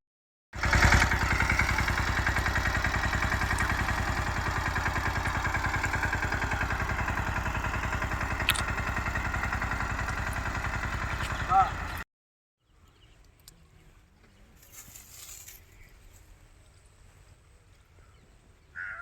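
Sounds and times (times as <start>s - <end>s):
tractor engine chugging: 0.6s - 12.0s.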